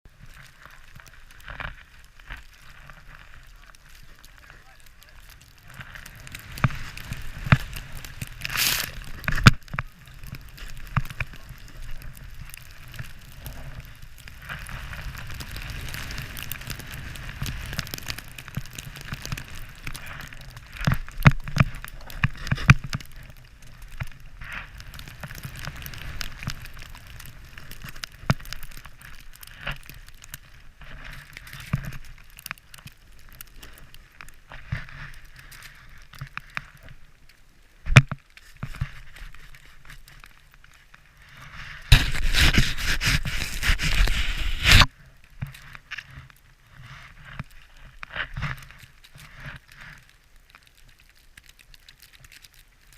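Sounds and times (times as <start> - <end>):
skis sliding through snow: 0.1 - 37.0, 38.3 - 52.9
ski knocks: 41.9 - 44.9.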